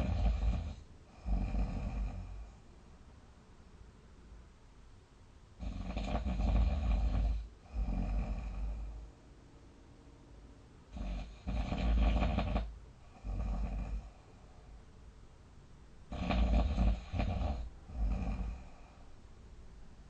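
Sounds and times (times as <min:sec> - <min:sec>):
person snoring: 0:00.0 - 0:02.6, 0:05.6 - 0:09.0, 0:10.9 - 0:14.4, 0:16.1 - 0:19.0.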